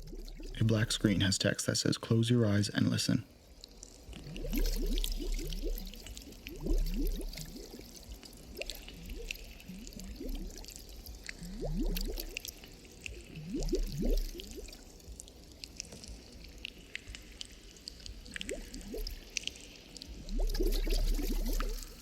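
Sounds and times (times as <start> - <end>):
deep low heartbeat pulse: 0.0 - 1.1, 4.0 - 22.0
water dripping: 0.0 - 1.3, 3.3 - 22.0
water bubbling and gurgling: 0.0 - 1.5, 3.3 - 22.0.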